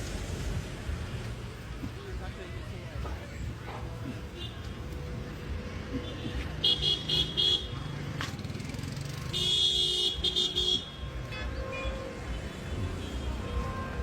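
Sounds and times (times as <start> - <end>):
street traffic rumbling: 0.0 - 14.0
vehicle horn tooting: 9.3 - 14.0.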